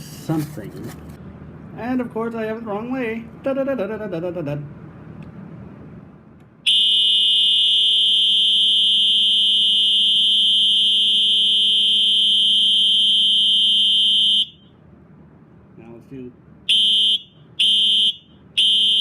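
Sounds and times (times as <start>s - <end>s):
fire alarm horn high-pitched tone: 6.6s - 14.8s, 16.7s - 19.0s.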